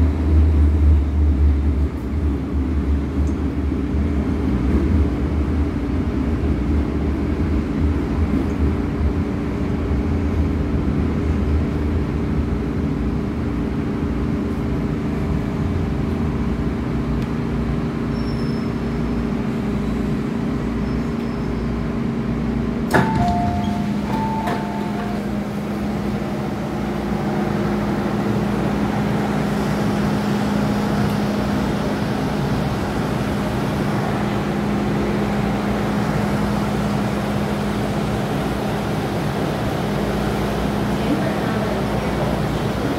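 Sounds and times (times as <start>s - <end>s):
train interior hum and rumble: 0.0s - 42.9s
two-tone electronic chime: 23.0s - 25.2s.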